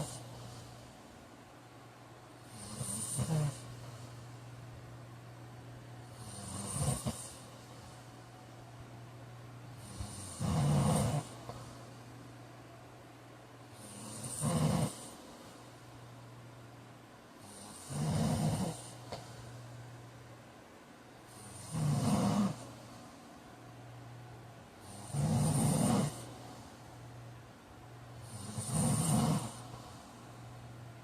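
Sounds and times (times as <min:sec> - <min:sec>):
man snoring loudly: 0:00.0 - 0:00.2, 0:02.5 - 0:03.6, 0:06.1 - 0:07.4, 0:09.8 - 0:11.4, 0:13.8 - 0:15.2, 0:17.4 - 0:19.0, 0:21.3 - 0:22.6, 0:24.8 - 0:26.3, 0:28.2 - 0:29.8
low steady hum: 0:00.0 - 0:31.0.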